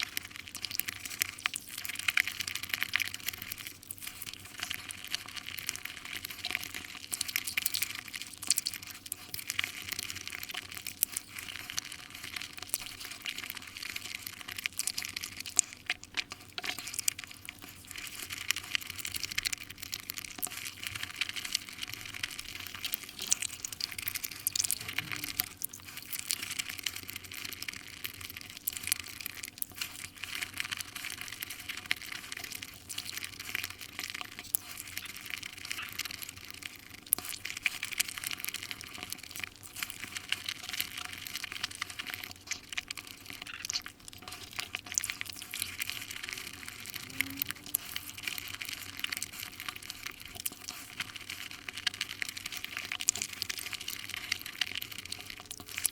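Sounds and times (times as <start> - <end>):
chewing and wet mouth sounds: 0.0 - 55.9.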